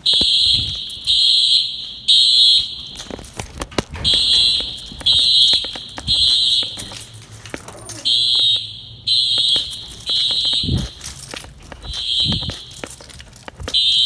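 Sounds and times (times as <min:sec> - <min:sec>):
fire alarm horn blasts: 0:00.0 - 0:14.0.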